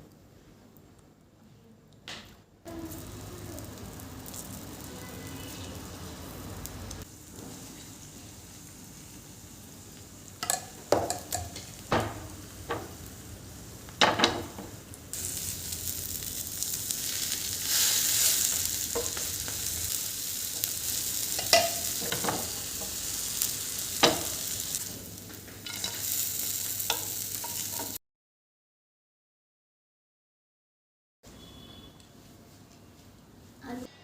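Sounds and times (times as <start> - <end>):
food sizzling in a pan: 2.7 - 28.0.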